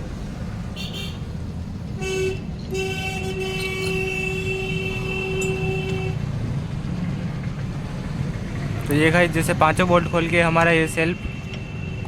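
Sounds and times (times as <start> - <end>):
street traffic rumble: 0.0 - 12.0
vehicle horn honking: 0.8 - 1.2, 2.0 - 6.2.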